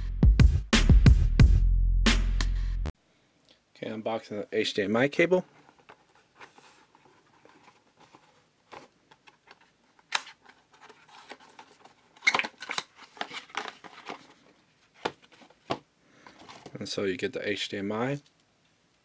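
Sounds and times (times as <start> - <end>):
packaging rustling and clicking: 5.5 - 16.8.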